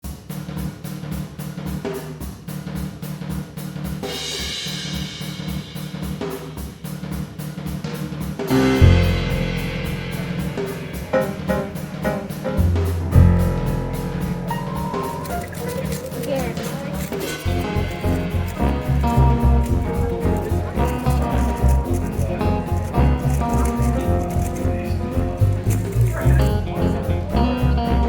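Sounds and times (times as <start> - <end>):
rock music with drums and guitar: 7.7 - 28.0.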